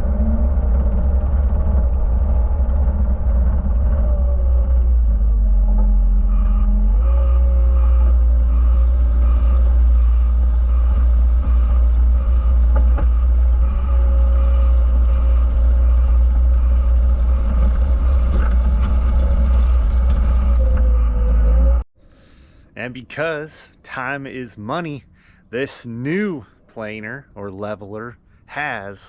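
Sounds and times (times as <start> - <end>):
land plane dragging over gravel: 0.0 - 21.8
loader engine droning: 0.0 - 22.8.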